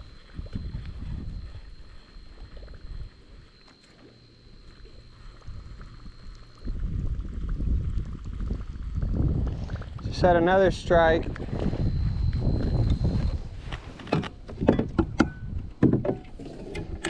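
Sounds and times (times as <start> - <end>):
wind buffeting microphone: 0.0 - 3.5, 5.1 - 17.0
faint steady high tone: 0.0 - 7.0, 10.0 - 14.3.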